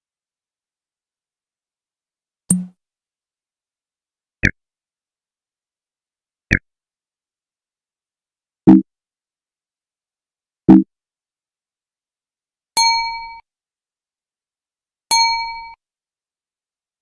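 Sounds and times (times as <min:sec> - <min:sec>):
low electronic blip: 0:02.5 - 0:02.7.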